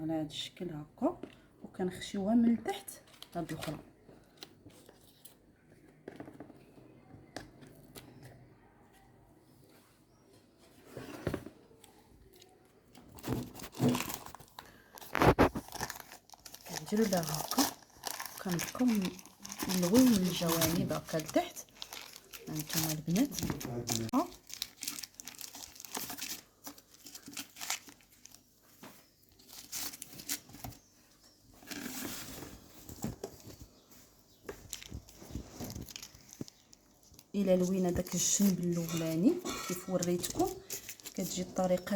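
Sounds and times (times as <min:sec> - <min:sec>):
dough rustling and crinkling: 0:09.6 - 0:41.9.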